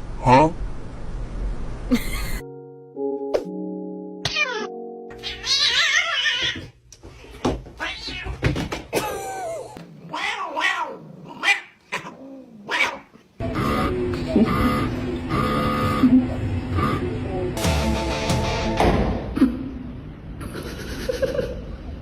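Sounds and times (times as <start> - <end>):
held musical chord: 2.4 - 5.6, 17.1 - 18.8
cats yowling in a fight: 10.0 - 13.1.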